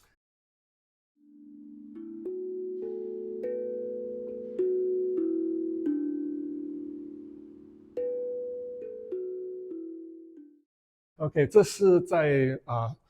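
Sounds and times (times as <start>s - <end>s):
gentle melody of ringing notes: 1.2s - 10.7s.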